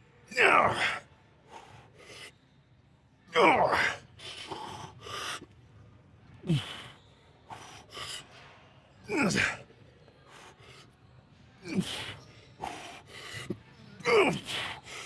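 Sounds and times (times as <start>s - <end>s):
man grunting: 0.3s - 1.0s, 3.4s - 4.0s, 9.1s - 9.6s, 14.0s - 14.6s
man breathing hard: 6.5s - 8.4s, 11.8s - 13.5s.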